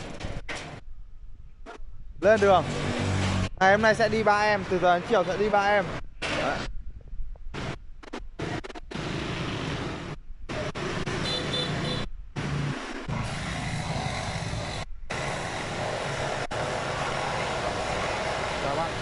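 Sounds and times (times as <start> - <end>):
road and wind noise: 0.0 - 19.0
vehicle engine rumble: 5.9 - 19.0.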